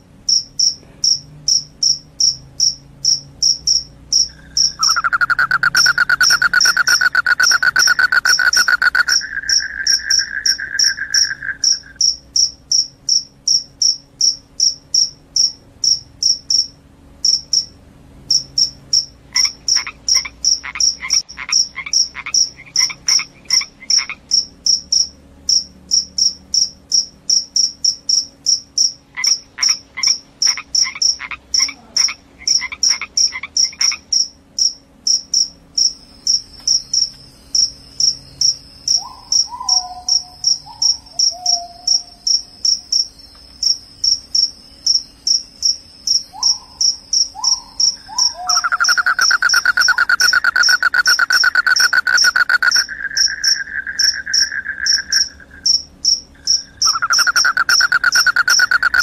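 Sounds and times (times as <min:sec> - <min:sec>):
loud low continuous trill: 0:00.0 - 0:23.4, 0:42.0 - 0:59.0
crickets chirping: 0:00.0 - 0:59.0
insect call: 0:00.0 - 0:59.0
short falling calls: 0:04.4 - 0:12.0, 0:47.3 - 0:55.7.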